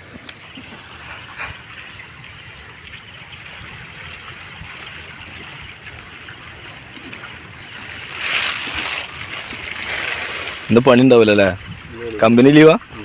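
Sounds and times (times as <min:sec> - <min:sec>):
water hissing: 0:07.7 - 0:11.6.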